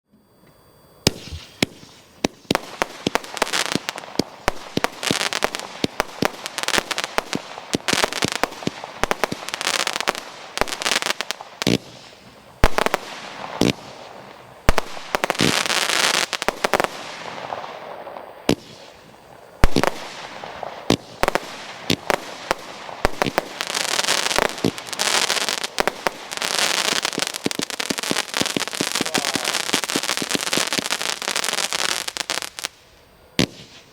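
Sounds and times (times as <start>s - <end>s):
firework launch thumps and bangs: 1.0s - 3.2s, 33.4s - 33.9s
firework crackling bursts: 1.0s - 33.9s.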